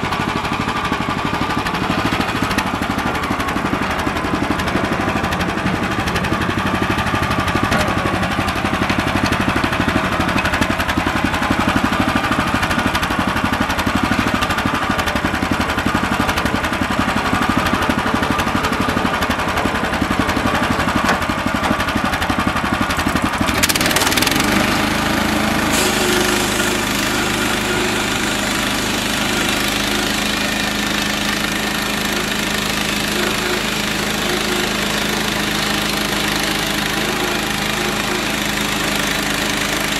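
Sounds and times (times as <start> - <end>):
gas engine running: 0.0 - 39.9
band blade cutting log: 23.4 - 39.9.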